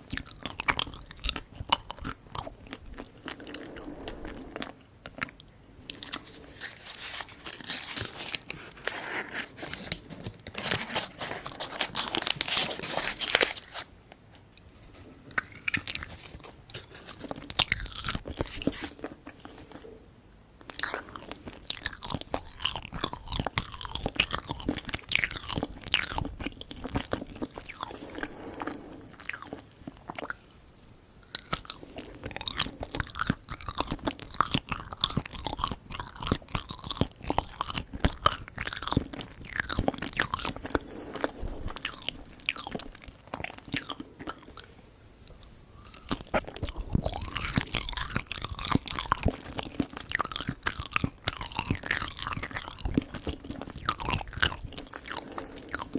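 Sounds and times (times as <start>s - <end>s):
biting and chewing: 0.0s - 13.9s, 15.2s - 19.9s, 20.6s - 30.6s, 31.2s - 55.9s.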